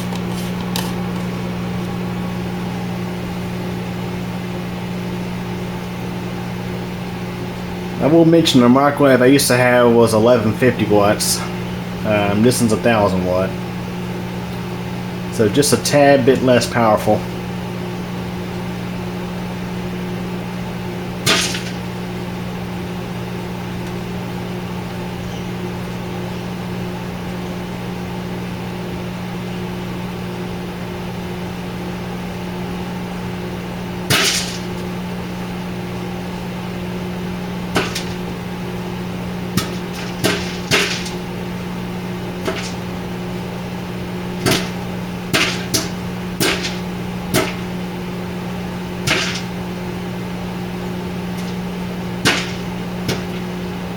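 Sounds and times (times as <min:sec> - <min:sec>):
popcorn popping: 0:00.0 - 0:01.5, 0:20.9 - 0:25.4, 0:34.0 - 0:36.2, 0:36.8 - 0:53.9
microwave oven hum: 0:00.0 - 0:53.9.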